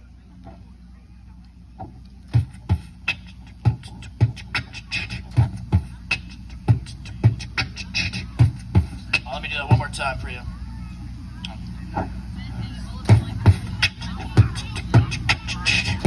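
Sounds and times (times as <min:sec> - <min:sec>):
beatboxing through a microphone: 0:01.8 - 0:10.0, 0:11.5 - 0:16.0.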